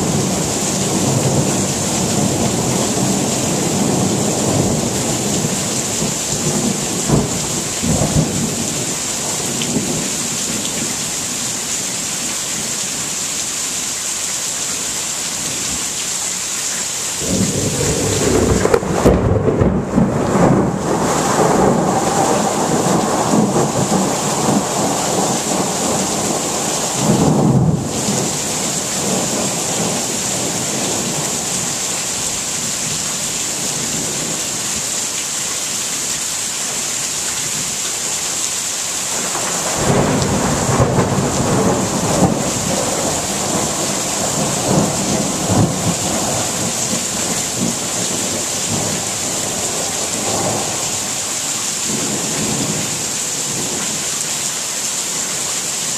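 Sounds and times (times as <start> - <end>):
thunder rumbling: 0.0 - 10.9, 17.2 - 31.8, 39.1 - 51.2
steady rain falling: 0.0 - 55.9.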